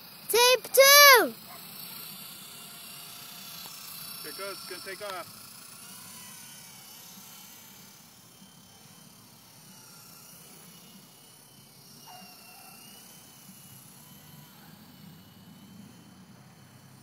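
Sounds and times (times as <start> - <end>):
model helicopter rotor whine: 0.0 - 17.0.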